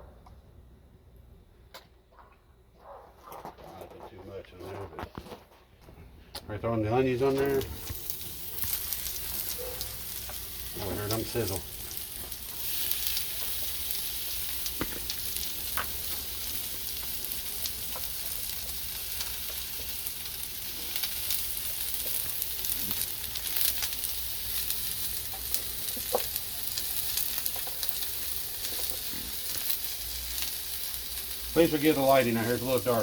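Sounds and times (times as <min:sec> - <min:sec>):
onions sizzling in oil: 0:07.5 - 0:33.0.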